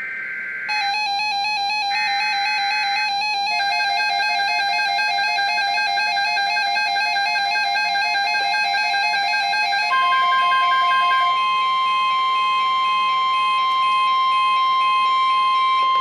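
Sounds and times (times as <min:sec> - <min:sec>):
warbling electronic alarm tone: 0:00.0 - 0:16.0.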